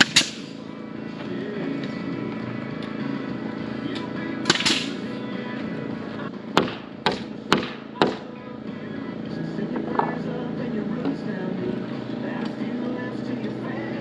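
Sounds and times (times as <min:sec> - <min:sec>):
background music: 0:00.0 - 0:14.0
hammer blows: 0:06.5 - 0:08.4.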